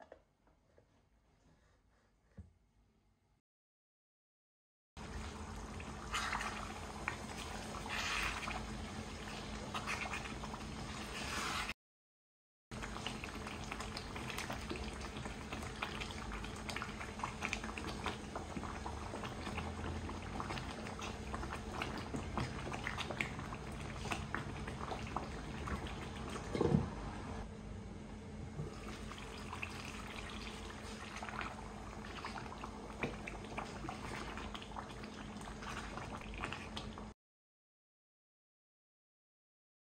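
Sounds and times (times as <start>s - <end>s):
pot of food bubbling: 5.0s - 11.7s, 12.8s - 27.5s, 28.5s - 37.2s.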